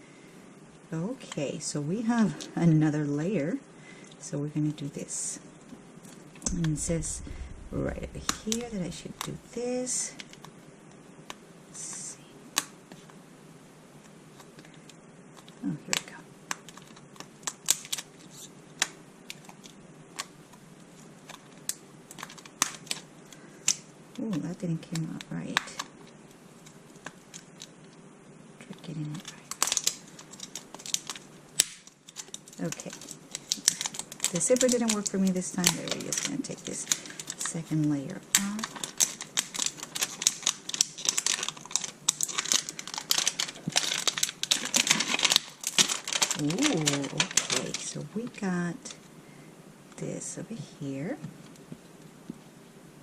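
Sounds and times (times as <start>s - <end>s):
plastic wrapper crackling: 6.5s - 10.5s, 14.4s - 28.0s, 28.8s - 49.0s
packaging crinkling and tearing: 14.3s - 28.0s, 29.0s - 48.1s.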